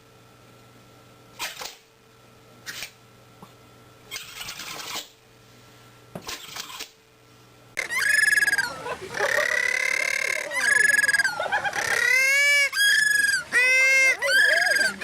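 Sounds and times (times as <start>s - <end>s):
bird calling: 7.8s - 15.0s.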